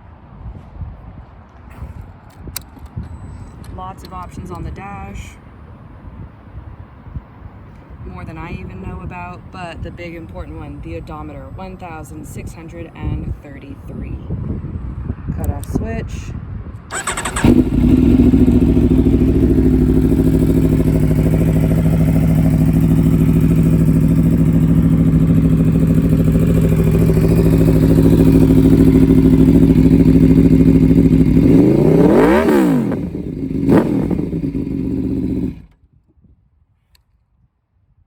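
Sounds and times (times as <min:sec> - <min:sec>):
engine revving: 0:16.9 - 0:35.7
motorcycle engine idling: 0:16.9 - 0:35.7.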